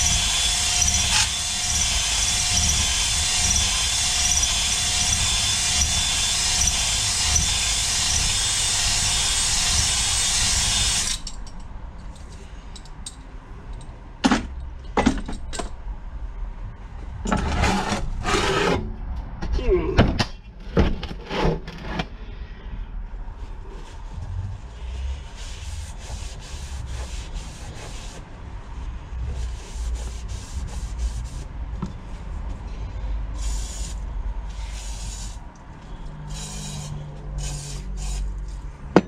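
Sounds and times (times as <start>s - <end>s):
drill grinding: 0.0s - 11.3s.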